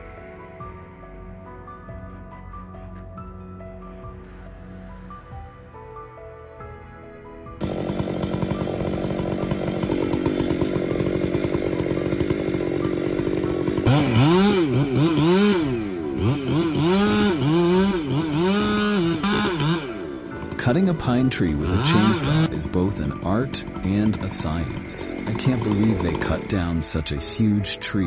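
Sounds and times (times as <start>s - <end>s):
chainsaw engine revving: 7.6s - 27.8s.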